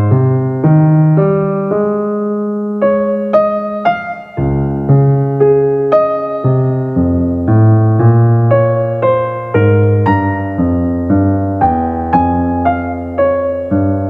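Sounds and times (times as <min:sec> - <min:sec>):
electric piano melody: 0:00.0 - 0:14.0
sustained bass notes: 0:04.4 - 0:14.0.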